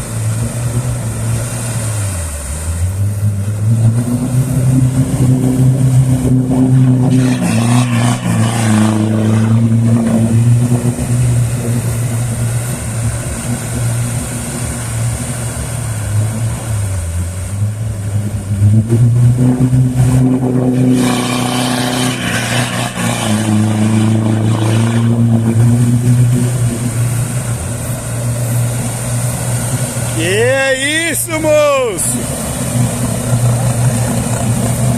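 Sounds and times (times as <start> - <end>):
vehicle engine revving: 0.0 - 30.6, 31.2 - 34.9.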